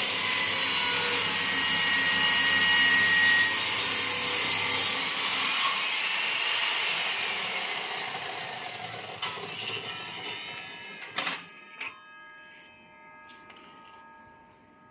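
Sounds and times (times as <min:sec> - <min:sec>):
power saw cutting wood: 0:00.0 - 0:11.4.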